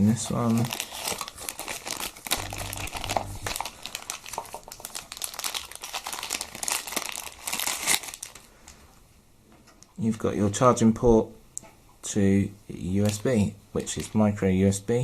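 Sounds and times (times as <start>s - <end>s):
plastic packaging crinkling: 0.2s - 8.5s.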